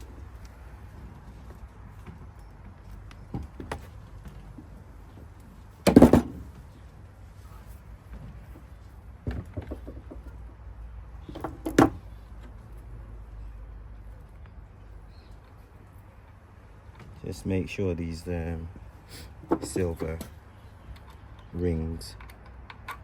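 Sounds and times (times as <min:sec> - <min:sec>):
tools knocking on metal: 0:05.9 - 0:06.4.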